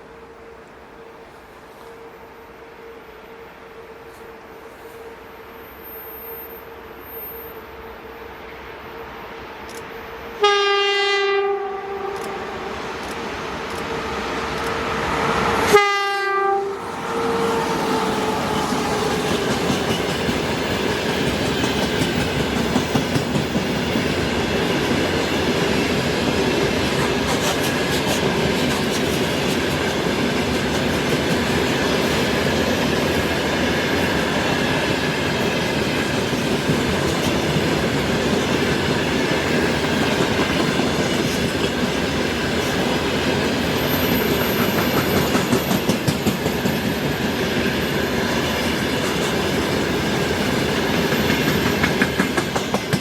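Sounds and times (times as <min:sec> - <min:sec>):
train horn: 0:00.1 - 0:05.7, 0:10.1 - 0:12.8, 0:13.9 - 0:20.1
train wheels clattering: 0:17.3 - 0:53.0.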